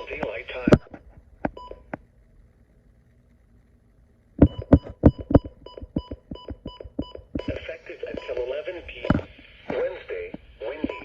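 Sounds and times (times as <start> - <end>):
radio static clicks: 0.0 - 2.1, 4.4 - 11.0
radio static crackles: 0.0 - 2.1, 7.2 - 11.0.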